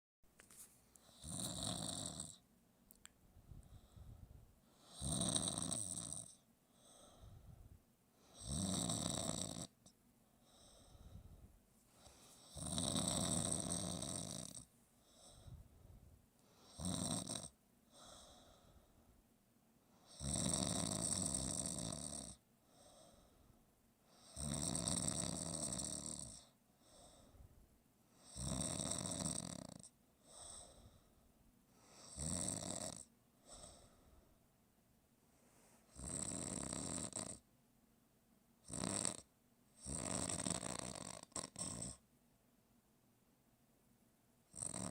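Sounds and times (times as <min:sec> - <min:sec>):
person snoring: 0:01.0 - 0:02.4, 0:04.7 - 0:07.4, 0:08.2 - 0:09.9, 0:12.0 - 0:15.6, 0:16.5 - 0:18.8, 0:20.0 - 0:23.3, 0:24.2 - 0:27.3, 0:28.2 - 0:31.0, 0:31.8 - 0:34.0, 0:35.8 - 0:37.4, 0:38.6 - 0:42.0, 0:44.5 - 0:44.9.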